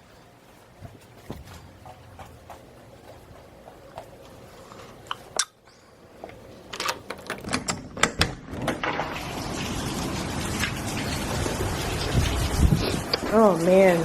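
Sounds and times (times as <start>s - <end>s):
handling clicks and knocks: 6.2s - 9.1s
heavy rain rushing: 8.6s - 14.0s.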